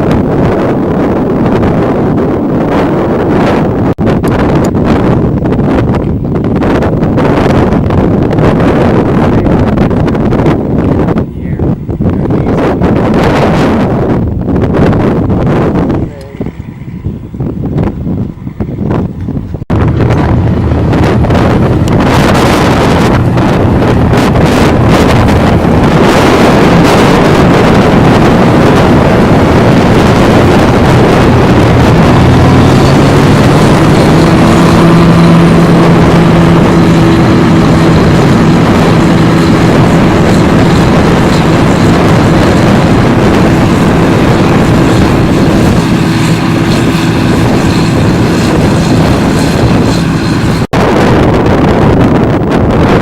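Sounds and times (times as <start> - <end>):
wind noise on microphone: 0.0 - 53.0
machinery engine running: 18.0 - 53.0.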